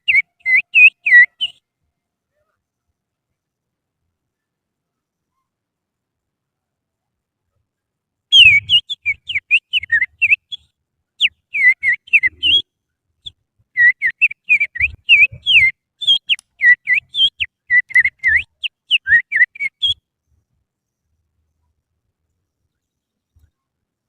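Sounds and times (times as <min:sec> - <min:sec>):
person whistling through fingers: 0:13.8 - 0:19.8.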